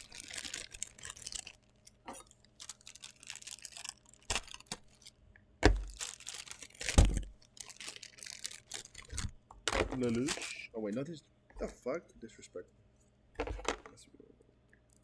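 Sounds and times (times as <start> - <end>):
packaging rustling and crinkling: 0.0 - 10.7.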